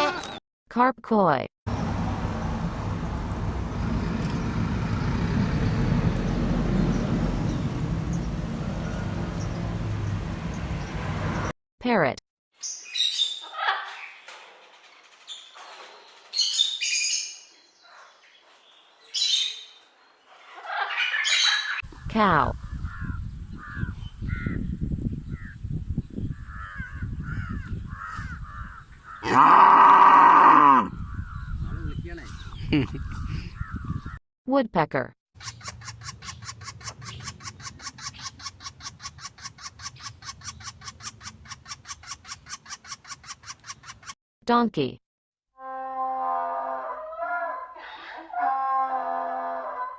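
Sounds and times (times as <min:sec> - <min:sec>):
parrot squawking and chattering: 0:20.5 - 0:21.8, 0:35.4 - 0:44.2
woodpecker pecking on wood: 0:35.4 - 0:44.2.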